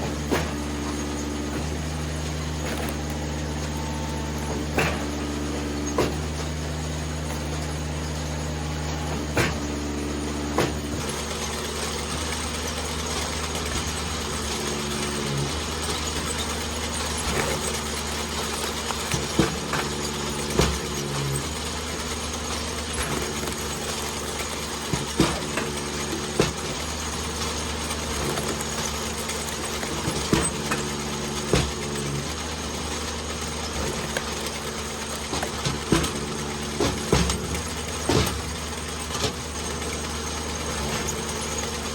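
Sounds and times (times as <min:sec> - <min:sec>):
wood cracking and splitting: 0:00.0 - 0:41.9
wood splitter engine running: 0:00.0 - 0:41.9
wood pieces dropping: 0:00.1 - 0:06.6.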